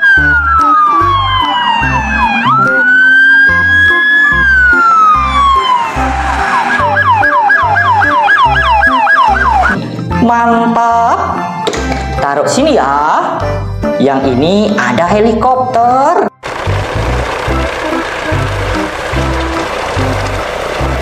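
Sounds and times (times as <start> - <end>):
police siren wailing and yelping: 0.0 - 9.8.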